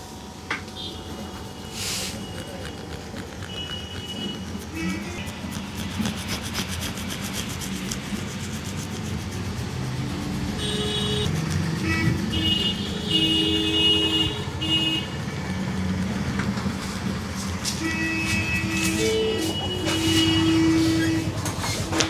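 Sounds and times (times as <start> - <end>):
roadside traffic: 0.0 - 22.0
vehicle horns blasting: 3.5 - 5.4, 10.6 - 15.2, 17.8 - 21.4.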